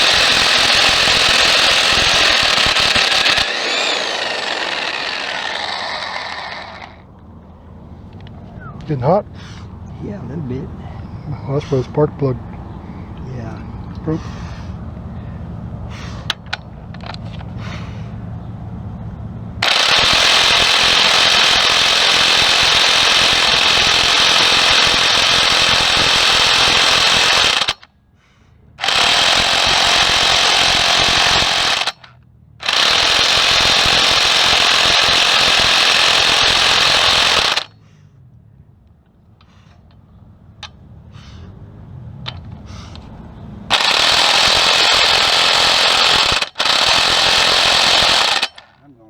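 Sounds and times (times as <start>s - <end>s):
impact wrench hammering: 0.0s - 7.0s, 19.6s - 27.8s, 28.8s - 37.7s, 43.7s - 48.7s.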